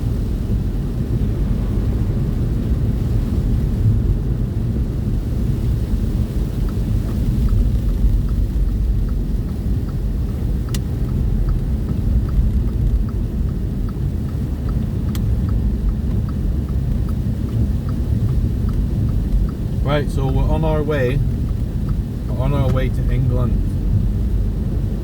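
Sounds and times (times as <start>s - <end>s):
vehicle engine and tyres rumbling: 0.0s - 25.0s
light regular ticking: 6.5s - 25.0s.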